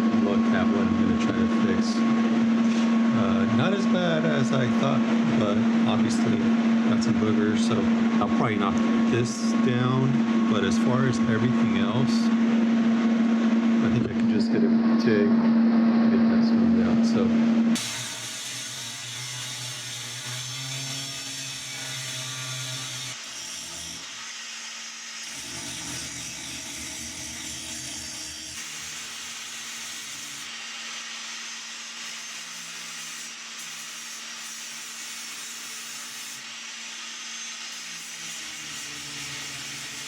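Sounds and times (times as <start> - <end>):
power tool grinding metal: 17.8 - 40.0.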